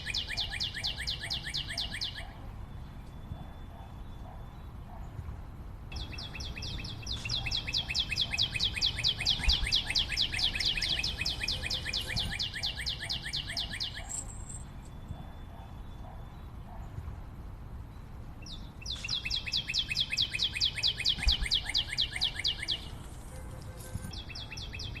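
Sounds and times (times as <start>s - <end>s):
bird trilling: 0.0s - 2.4s, 6.0s - 15.7s, 18.5s - 23.1s.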